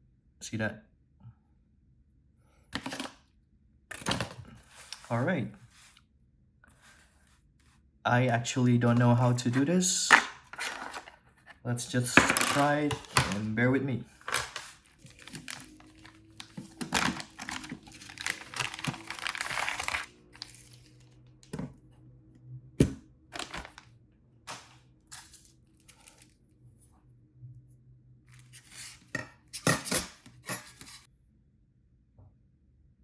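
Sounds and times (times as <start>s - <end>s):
plastic packaging crinkling: 12.0s - 13.5s, 14.1s - 21.1s, 23.4s - 23.9s, 24.5s - 26.3s.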